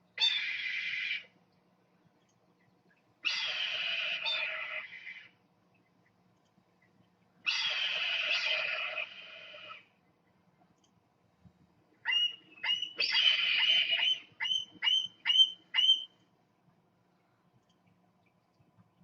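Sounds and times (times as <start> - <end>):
hawk calling: 12.1 - 16.1.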